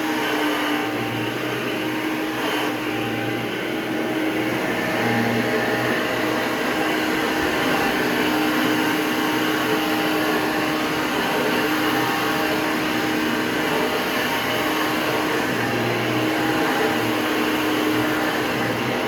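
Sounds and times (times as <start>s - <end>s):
upright vacuum cleaner running: 0.0s - 19.0s.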